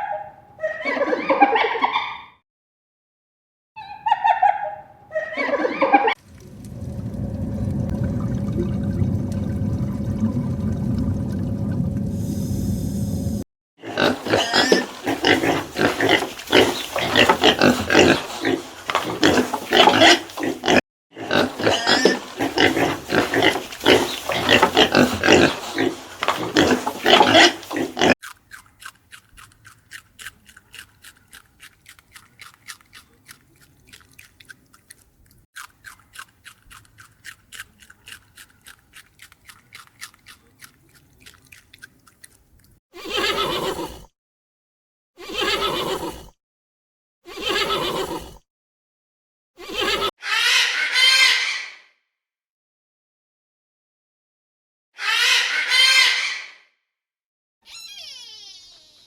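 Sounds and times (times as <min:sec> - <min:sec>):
dense loud animal noise: 0:13.8 - 0:28.2
rapid chewing clicks: 0:22.3 - 0:42.8
short animal calls: 0:57.7 - 0:59.0.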